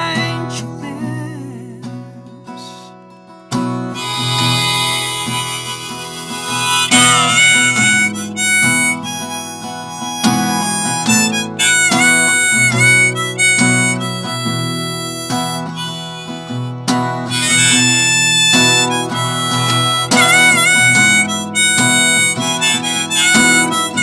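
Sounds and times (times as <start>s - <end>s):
strummed acoustic guitar: 0.0s - 24.0s
harmonica solo: 3.9s - 24.0s.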